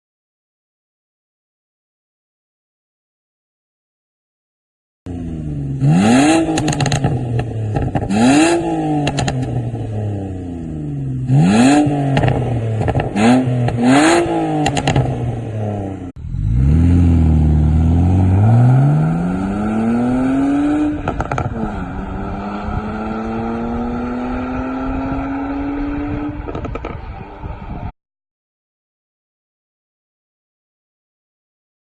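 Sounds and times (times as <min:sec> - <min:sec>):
car engine revving: 0:05.1 - 0:27.6
car accelerating hard: 0:05.1 - 0:27.9
exhaust crackles and pops: 0:06.5 - 0:08.2, 0:09.0 - 0:09.6, 0:12.1 - 0:13.8, 0:21.0 - 0:21.6, 0:26.4 - 0:27.6.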